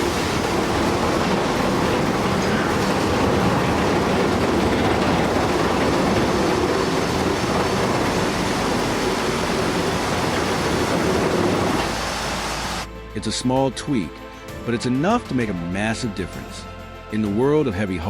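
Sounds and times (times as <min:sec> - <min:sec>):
heavy machinery diesel rumble: 0:00.0 - 0:12.9.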